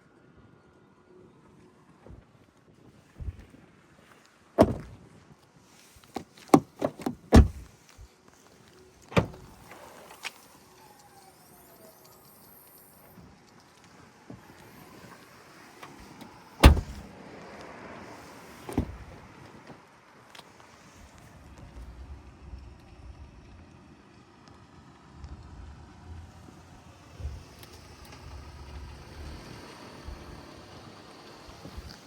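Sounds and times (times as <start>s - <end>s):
car door clicks and knocks: 4.6s - 4.9s, 6.2s - 7.7s, 9.1s - 9.5s, 16.6s - 17.0s, 18.6s - 19.1s
car door thump: 4.6s - 4.9s, 6.2s - 7.7s, 9.1s - 9.5s, 16.6s - 17.1s, 18.6s - 19.2s.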